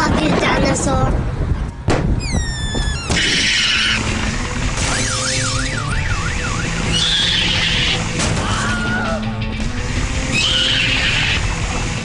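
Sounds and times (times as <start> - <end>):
warbling whistle-like tone: 2.2 - 4.0, 4.9 - 8.0
cartoon background music: 2.2 - 12.0.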